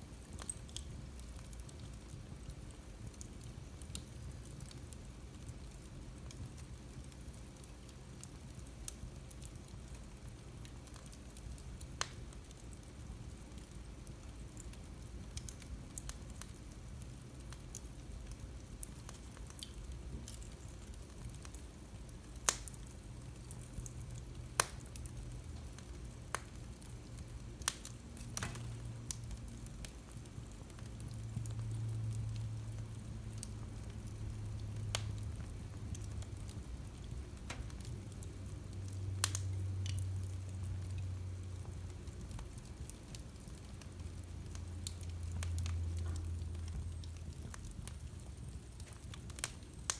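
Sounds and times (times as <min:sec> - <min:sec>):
wood fire crackling: 0:00.0 - 0:49.9
low steady rumble: 0:14.4 - 0:49.9.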